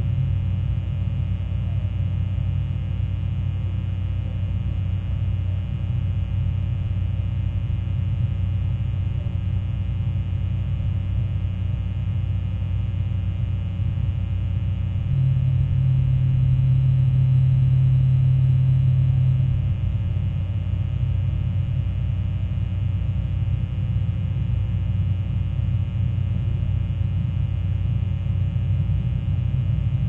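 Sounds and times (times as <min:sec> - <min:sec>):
fog horn drone: 0:00.0 - 0:30.0.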